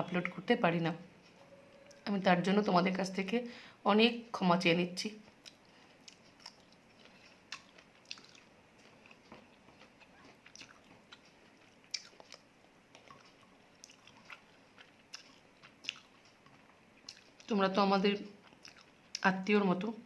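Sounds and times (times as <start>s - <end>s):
mouth clicks and smacks: 5.4s - 17.5s, 18.4s - 19.3s
person chewing wet mouth sounds: 5.4s - 17.5s, 18.4s - 19.2s.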